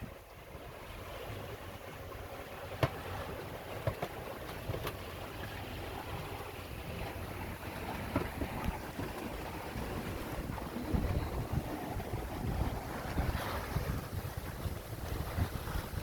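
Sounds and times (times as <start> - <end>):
water washing along hull: 0.0 - 16.0
wind rumbling on microphone: 2.9 - 16.0.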